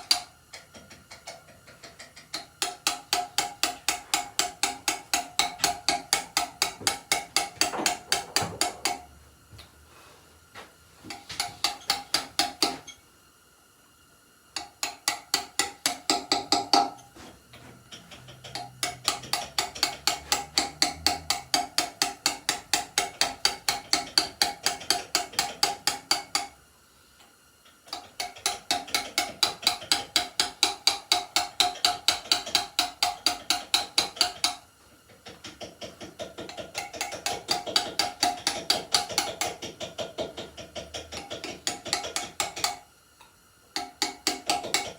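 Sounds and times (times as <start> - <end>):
hammer striking chisel into stone: 11.1 - 12.9, 14.6 - 17.0, 18.5 - 26.5, 27.9 - 34.6, 35.5 - 42.8.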